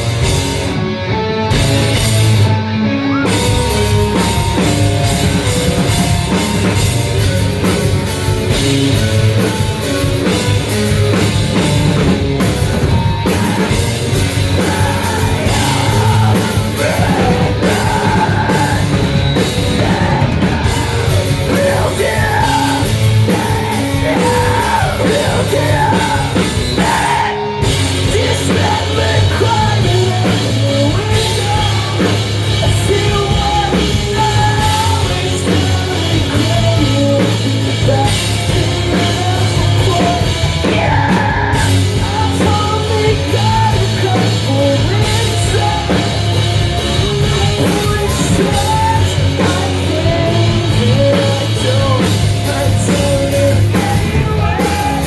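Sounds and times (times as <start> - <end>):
bass guitar: 0.0 - 55.0
distorted guitars: 0.0 - 55.0
drum kit: 0.0 - 55.0
person yelling vocals: 19.8 - 29.9.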